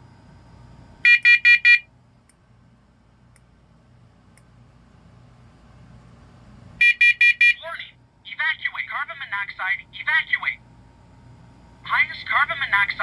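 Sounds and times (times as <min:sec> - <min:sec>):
alarm high-pitched beeps: 0:01.1 - 0:01.8, 0:06.8 - 0:07.6.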